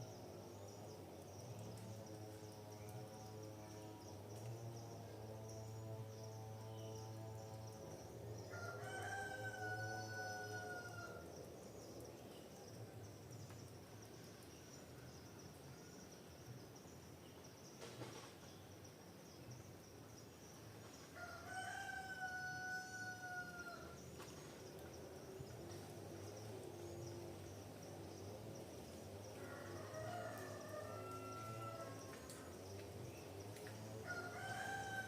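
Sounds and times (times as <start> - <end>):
high insect drone: 0.0 - 35.0
rooster crowing: 8.5 - 11.2, 21.2 - 24.0, 29.4 - 32.2, 34.0 - 35.0.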